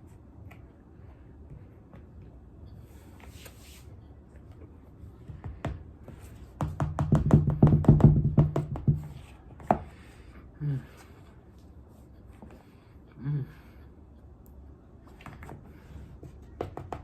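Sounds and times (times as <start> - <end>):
person humming: 13.2 - 13.7.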